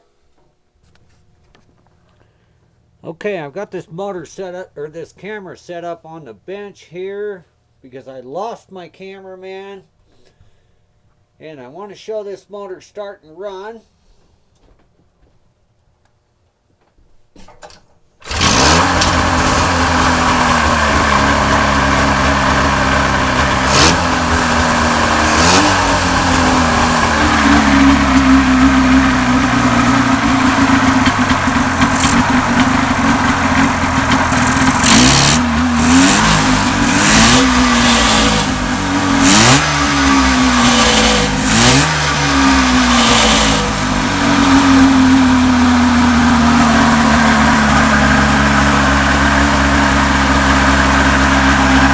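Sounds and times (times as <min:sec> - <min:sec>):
two-stroke engine idling and revving: 0:18.2 - 0:51.9.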